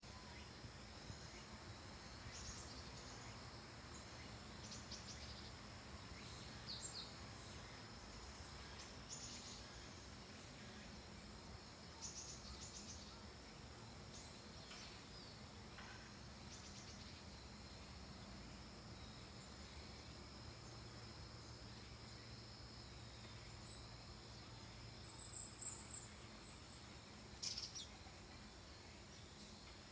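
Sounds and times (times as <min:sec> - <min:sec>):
high-pitched insect trill: 0:06.1 - 0:14.6, 0:16.5 - 0:29.9.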